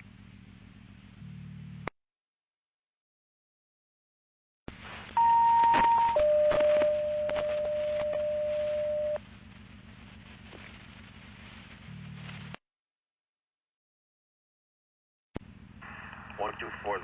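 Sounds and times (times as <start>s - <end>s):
radio hum and static: 0.0s - 1.9s, 4.7s - 12.6s, 15.4s - 17.0s
two-tone radio page tones: 5.2s - 9.2s.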